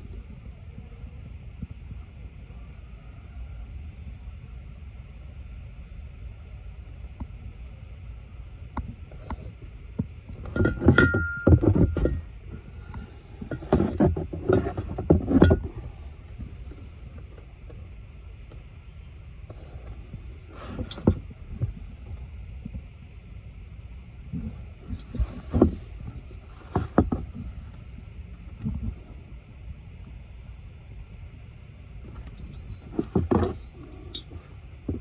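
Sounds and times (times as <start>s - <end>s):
steady low rumble: 0.0s - 35.0s
knocking and clattering: 10.4s - 12.3s.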